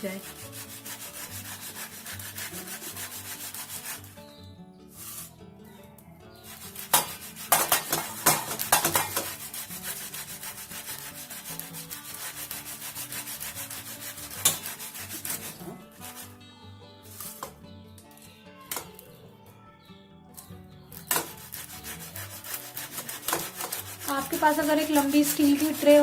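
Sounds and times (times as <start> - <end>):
potato grated on metal grater: 0.0 - 4.2, 6.4 - 16.3, 21.0 - 26.0.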